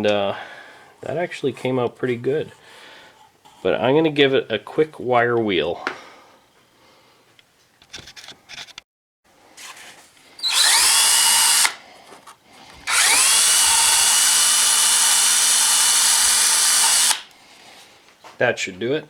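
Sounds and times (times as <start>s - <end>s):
wire wheel power tool whining: 10.4s - 11.8s, 12.8s - 17.3s.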